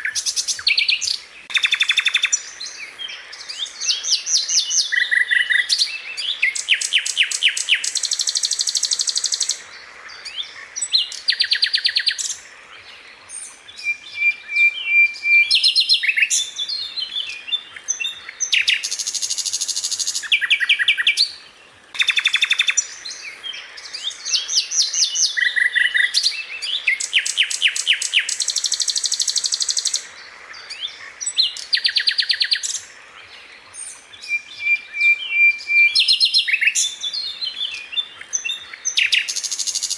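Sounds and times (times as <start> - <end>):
flycatcher singing: 0.0 - 12.5, 33.8 - 39.9.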